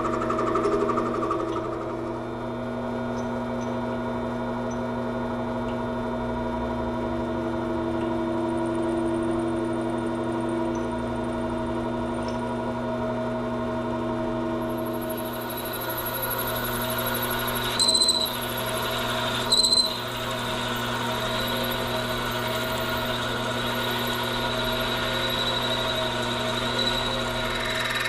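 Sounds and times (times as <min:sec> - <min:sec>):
metal lathe humming: 0:14.8 - 0:28.0.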